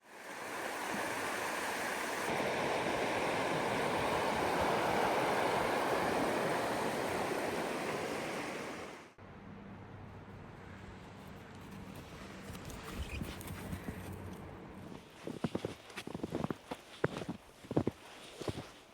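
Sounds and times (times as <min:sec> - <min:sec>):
running water rushing: 0:00.0 - 0:09.2.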